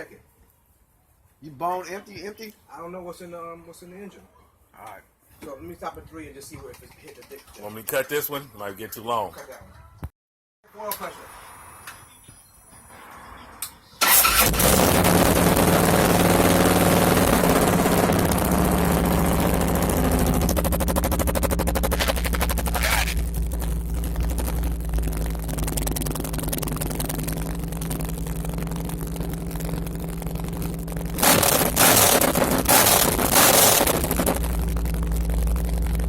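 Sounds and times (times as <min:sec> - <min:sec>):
engine throttle blips: 0:14.0 - 0:36.0
motorcycle engine idling: 0:15.0 - 0:36.0.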